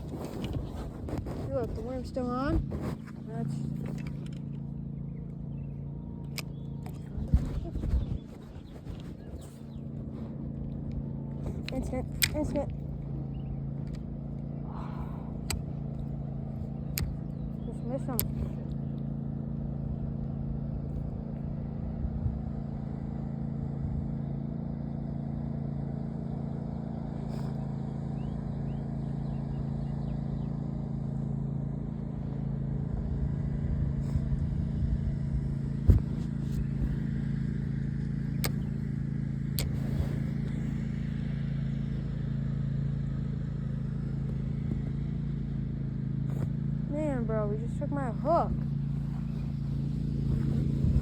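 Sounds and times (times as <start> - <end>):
low mechanical hum: 0.0 - 51.0
sharp clicks: 16.8 - 17.3, 18.0 - 18.5, 39.5 - 40.0.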